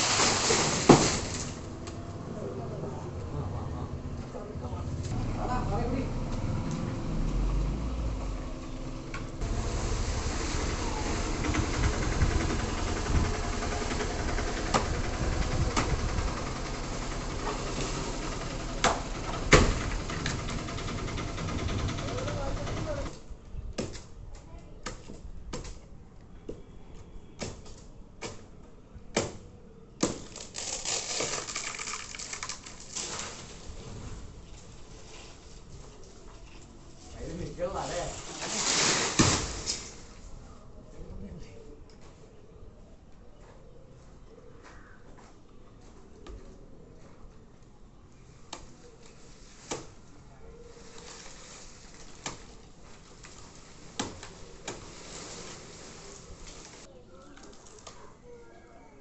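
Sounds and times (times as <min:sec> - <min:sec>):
rustling hiss: 0:00.0 - 0:01.7, 0:09.4 - 0:20.2, 0:37.1 - 0:40.4, 0:50.8 - 0:56.9
crackling and rustling: 0:00.0 - 0:02.1, 0:30.2 - 0:40.6, 0:48.3 - 0:58.2.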